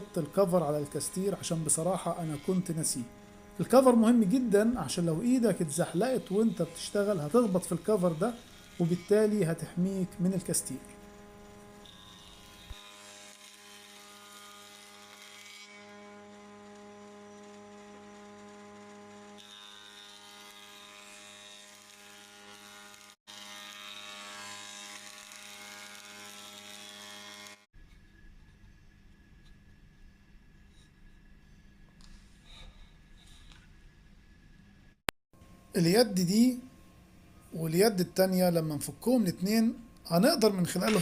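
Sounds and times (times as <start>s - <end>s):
planer motor hum: 0.0s - 27.6s.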